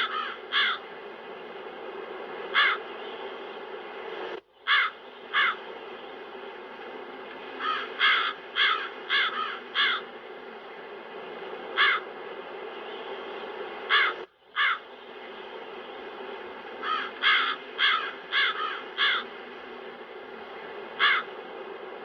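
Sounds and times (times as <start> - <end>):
crows cawing: 0.0 - 0.9, 2.5 - 2.9, 4.7 - 5.6, 7.6 - 10.1, 11.8 - 12.1, 13.9 - 14.9, 16.8 - 19.3, 21.0 - 21.4
wind: 0.0 - 22.0.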